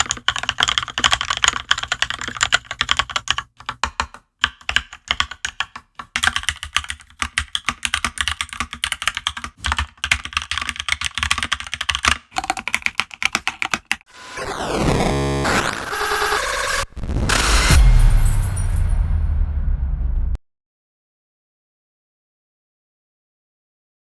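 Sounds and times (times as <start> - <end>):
computer keyboard typing: 0.0 - 14.1.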